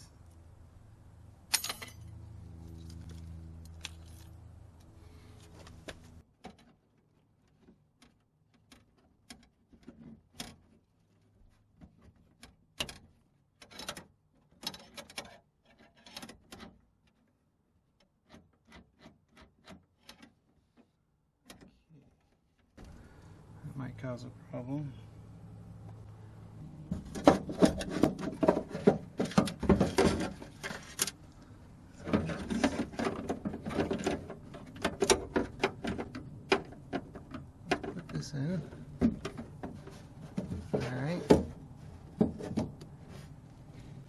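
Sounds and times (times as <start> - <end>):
metal parts clicking and clinking: 1.5 - 3.2.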